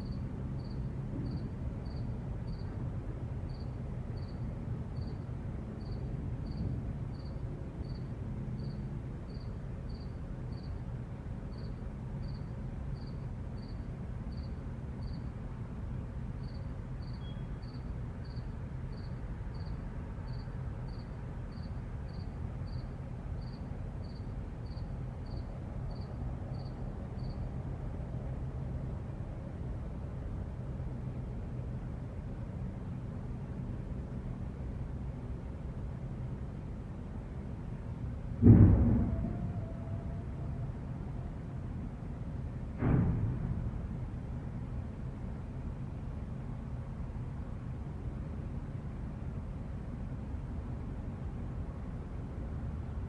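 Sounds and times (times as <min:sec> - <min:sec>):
cricket chirping: 0:00.0 - 0:02.8, 0:03.4 - 0:15.4, 0:16.4 - 0:27.5
distant traffic rumble: 0:00.0 - 0:53.0.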